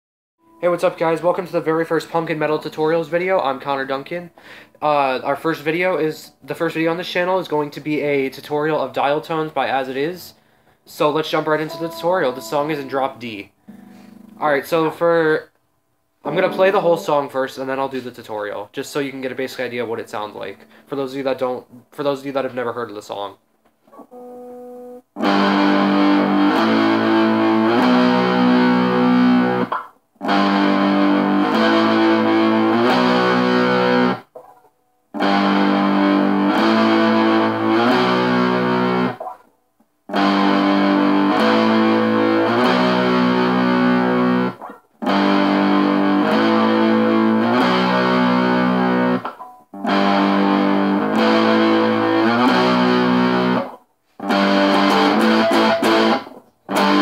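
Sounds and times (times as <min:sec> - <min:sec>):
distorted electric guitar strumming: 0:11.2 - 0:15.4, 0:16.2 - 0:17.6, 0:25.2 - 0:39.4, 0:40.1 - 0:57.0.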